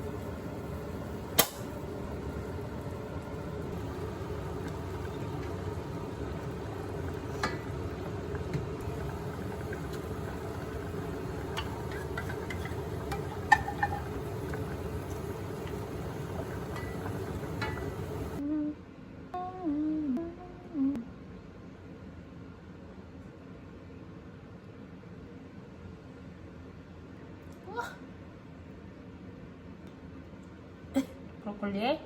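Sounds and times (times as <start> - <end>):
low kitchen appliance hum: 0.0 - 32.0
cookware clinking: 9.4 - 18.4.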